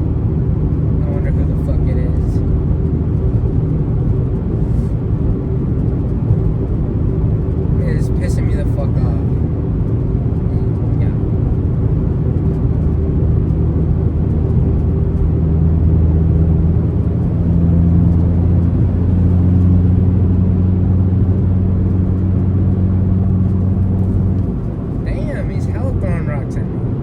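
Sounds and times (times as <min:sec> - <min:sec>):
road noise: 0:00.0 - 0:27.0
car engine pulling: 0:07.5 - 0:27.0.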